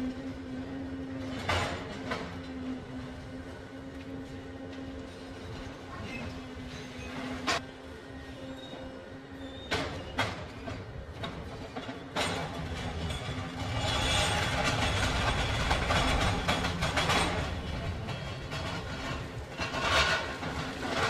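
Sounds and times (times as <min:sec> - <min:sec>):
heavy machinery humming: 0:00.0 - 0:21.0
machinery clanking and knocks: 0:09.7 - 0:21.0.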